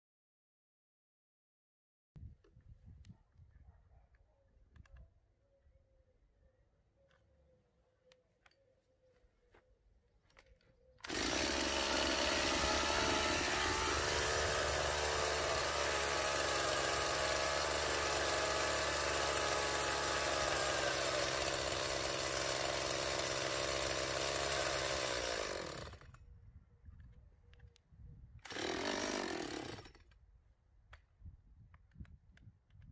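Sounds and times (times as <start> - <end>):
chainsaw engine running: 11.0 - 26.2, 28.4 - 30.1.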